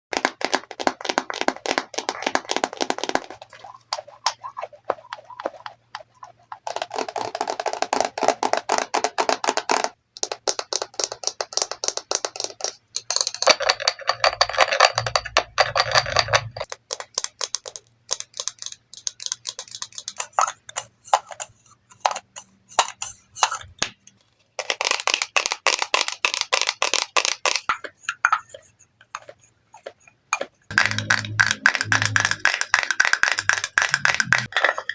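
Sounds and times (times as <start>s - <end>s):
tapping on makeup cases: 30.4s - 34.9s.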